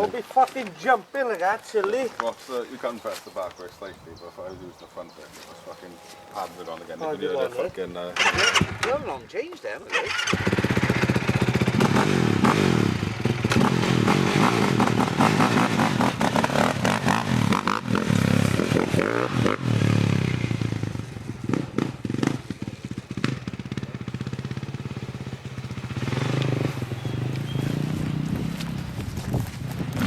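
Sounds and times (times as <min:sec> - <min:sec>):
pit bike engine revving: 0:05.6 - 0:09.2, 0:09.9 - 0:30.0.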